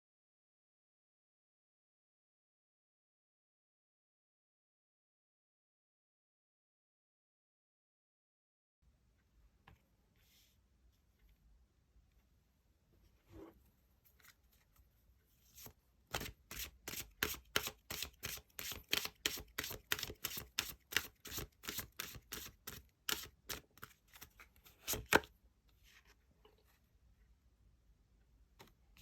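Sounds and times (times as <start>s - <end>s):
cards being shuffled: 15.5s - 25.3s.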